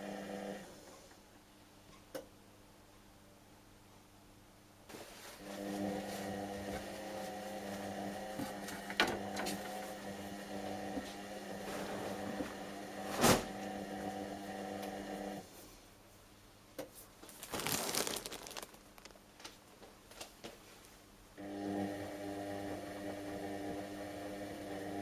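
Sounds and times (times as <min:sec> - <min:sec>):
washing machine motor humming: 0:05.5 - 0:15.4, 0:21.4 - 0:25.0.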